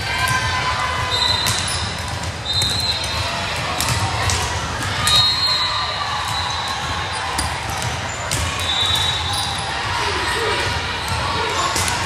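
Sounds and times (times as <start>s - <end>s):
murmur of crowd voices: 0.0s - 12.0s
sneakers squeaking on court: 1.2s - 5.7s, 6.3s - 9.8s
volleyball thumping: 1.4s - 5.2s, 6.2s - 9.2s.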